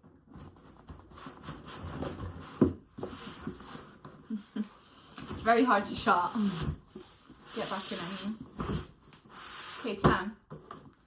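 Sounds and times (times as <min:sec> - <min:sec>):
cardboard rustling: 0:00.0 - 0:04.4.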